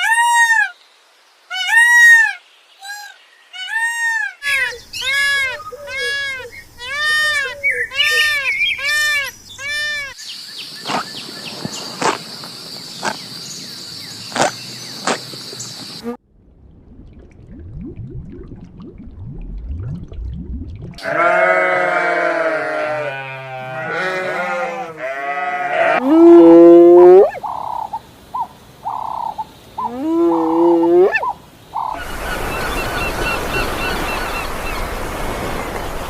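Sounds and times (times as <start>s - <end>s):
low rumble: 16.2s - 21.0s.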